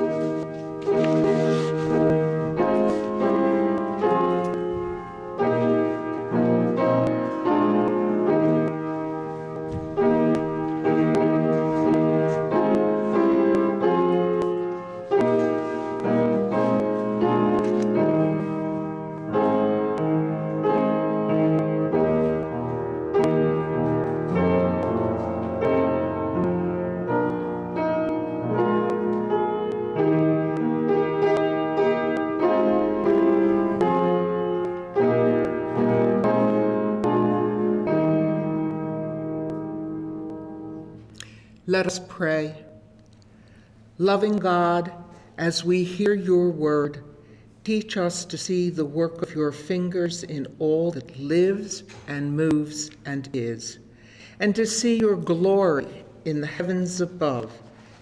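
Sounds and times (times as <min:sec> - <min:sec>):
solo piano chords: 0:00.0 - 0:58.0.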